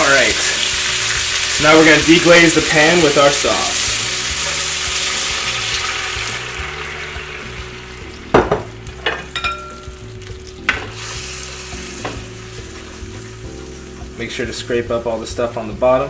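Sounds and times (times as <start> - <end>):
sauce hissing in a hot pan: 0.0 - 15.9
utensil knocking against pan: 8.3 - 9.6.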